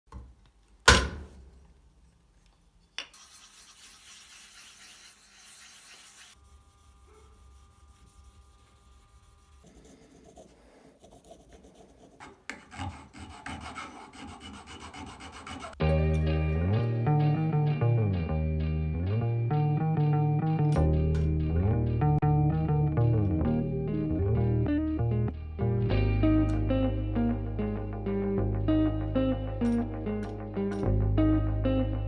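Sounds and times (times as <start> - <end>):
hand filing strokes: 3.2 - 15.8.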